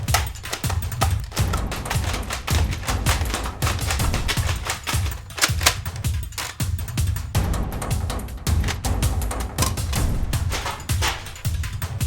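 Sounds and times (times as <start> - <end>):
music with fast heavy drum beat: 0.0 - 12.0.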